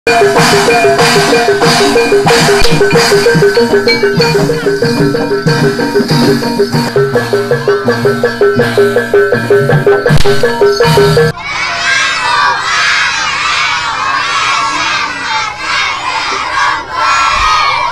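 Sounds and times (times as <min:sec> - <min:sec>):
gamelan ensemble playing: 0:00.1 - 0:11.4
repeated metallophone notes: 0:00.1 - 0:11.4
hand drum strokes: 0:00.2 - 0:11.3.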